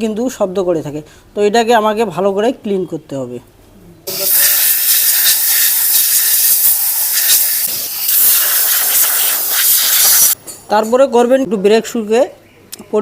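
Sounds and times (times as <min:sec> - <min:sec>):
compressed air hissing: 0:04.1 - 0:10.4.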